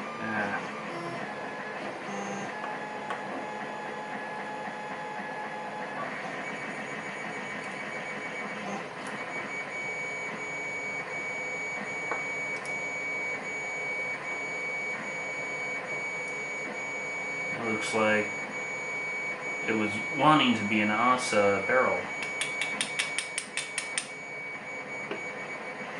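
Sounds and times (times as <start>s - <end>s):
machine hum with tones: 0.0s - 25.9s.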